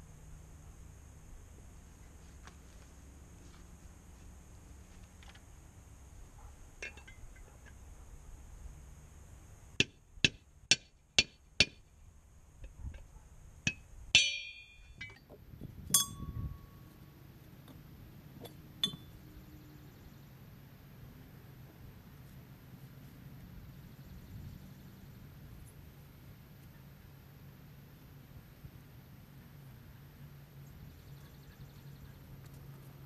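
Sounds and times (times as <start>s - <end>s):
metal tools clinking: 6.8s - 7.5s, 18.4s - 19.2s
hammer blows on metal: 9.8s - 11.8s, 13.7s - 15.2s, 15.9s - 16.9s.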